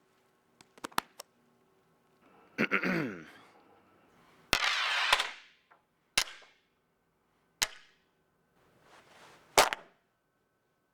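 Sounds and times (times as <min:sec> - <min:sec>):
sharp gunshot cracks: 0:09.6 - 0:09.9.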